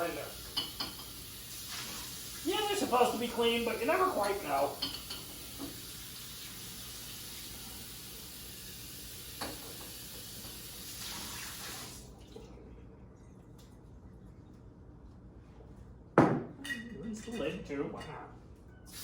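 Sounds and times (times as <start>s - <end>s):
tap running water: 0.0s - 12.4s.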